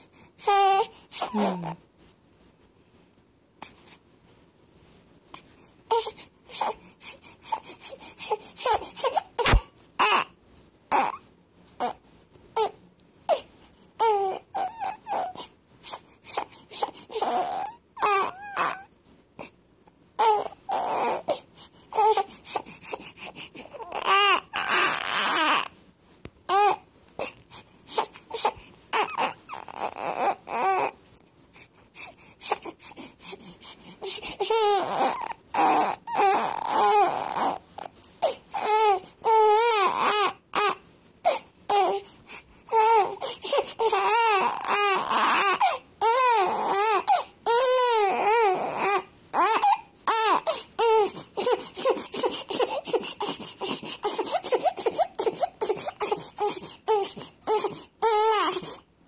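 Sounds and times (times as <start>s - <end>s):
baby crying and babbling: 0.4s - 1.8s, 8.3s - 10.3s, 10.9s - 11.2s, 14.0s - 15.4s, 16.8s - 18.9s, 20.2s - 21.4s, 22.0s - 22.3s, 23.7s - 25.7s, 26.5s - 26.8s, 28.0s - 31.0s, 34.1s - 42.0s, 42.7s - 58.8s.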